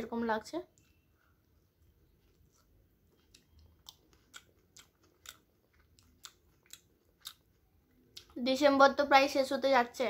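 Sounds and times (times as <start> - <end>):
person chewing wet mouth clicks: 2.2 - 8.4.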